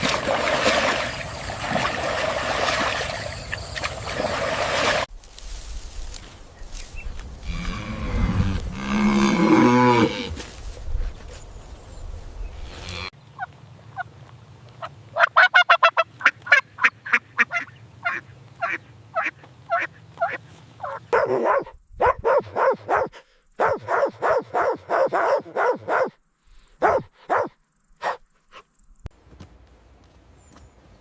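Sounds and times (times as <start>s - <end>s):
waterfowl calling: 14.8s - 21.0s.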